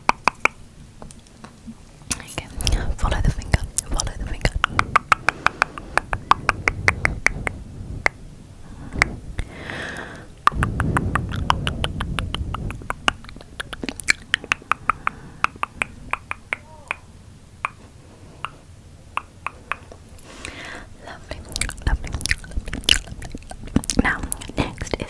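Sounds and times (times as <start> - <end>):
tongue and mouth clicks: 0.0 - 0.6, 2.1 - 8.2, 10.4 - 25.0
low rumble: 2.3 - 18.3, 20.8 - 25.0
short breathy hiss: 5.2 - 6.2, 8.6 - 11.2, 14.6 - 15.6, 20.2 - 21.0.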